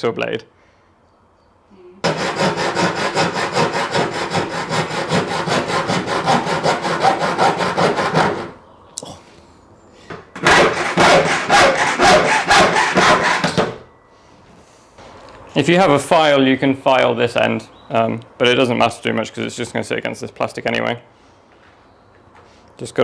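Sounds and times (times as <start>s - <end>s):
hacksaw cutting tube: 2.0s - 8.6s, 10.4s - 13.8s.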